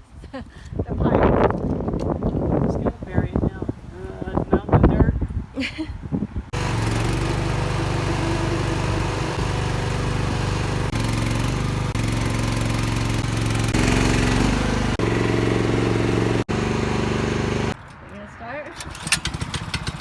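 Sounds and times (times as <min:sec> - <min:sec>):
diesel engine running: 0:06.5 - 0:17.8.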